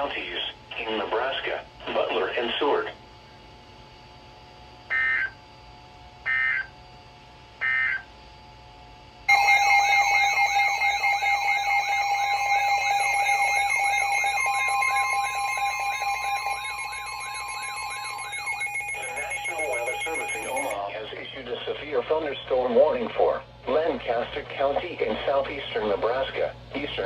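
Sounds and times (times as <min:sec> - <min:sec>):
buzzing digital data bursts: 0:09.3 - 0:20.8
loud steady alert tone: 0:09.3 - 0:20.8
warbling sweeping tone: 0:09.3 - 0:20.8.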